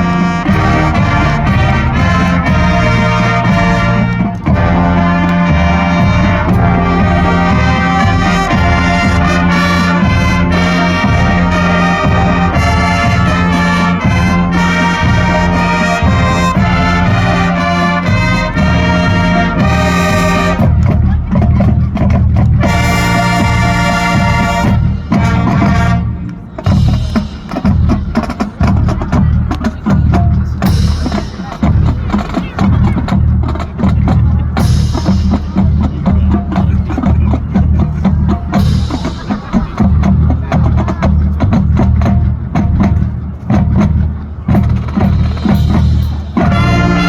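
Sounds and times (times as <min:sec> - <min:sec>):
held low brass note: 0:00.0 - 0:21.0, 0:46.4 - 0:47.0
trumpets and trombones: 0:00.0 - 0:29.4, 0:34.6 - 0:47.0
marching band playing: 0:00.0 - 0:47.0
steady drum beat: 0:00.0 - 0:47.0.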